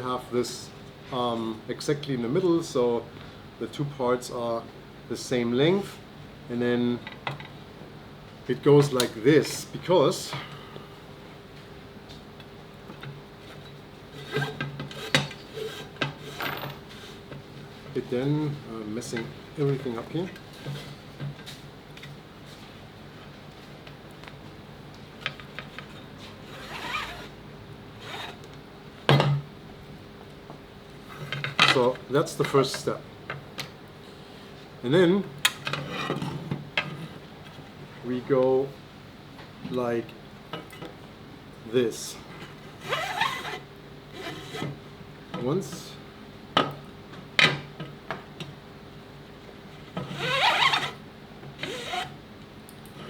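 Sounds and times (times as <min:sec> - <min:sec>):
webbing squeaky rubbing pull: 0:14.2 - 0:16.4, 0:26.4 - 0:27.4, 0:42.8 - 0:44.8, 0:50.0 - 0:51.0, 0:51.6 - 0:52.2
webbing rasping through metal slots: 0:50.0 - 0:51.0.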